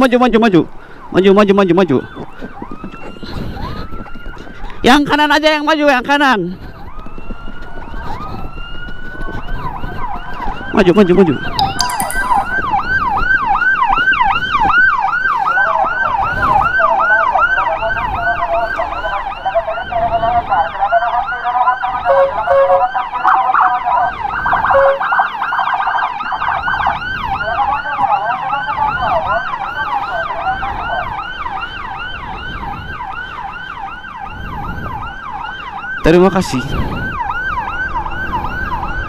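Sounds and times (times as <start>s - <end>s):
electronic siren yelping: 20.4s - 26.4s.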